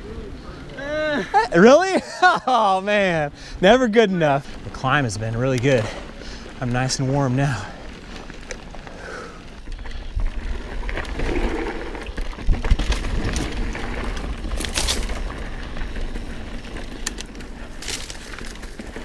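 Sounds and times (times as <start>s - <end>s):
bike tyres rolling on dirt: 0.0s - 19.0s
bike clicks and rattles: 4.1s - 19.0s.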